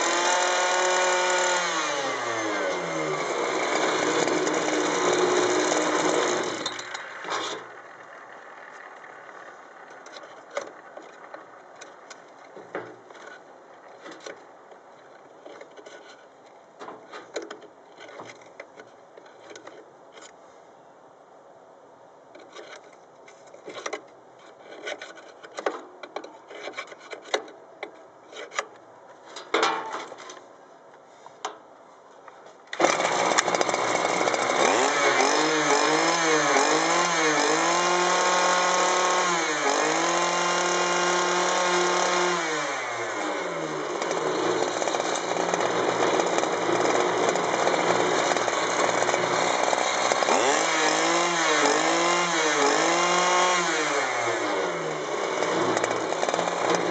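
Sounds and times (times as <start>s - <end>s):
string trimmer engine revving: 0.0s - 9.5s, 32.8s - 56.9s.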